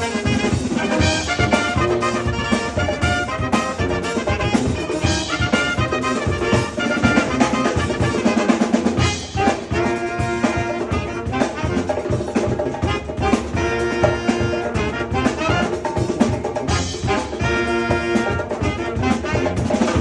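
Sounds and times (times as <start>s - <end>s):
driving drum beat: 0.0s - 20.0s
trumpets and trombones: 0.0s - 20.0s.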